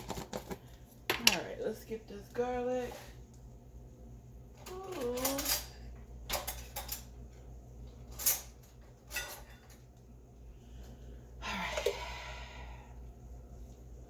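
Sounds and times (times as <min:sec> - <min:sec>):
utensils and dishes clinking: 0:04.6 - 0:07.2, 0:08.0 - 0:10.0.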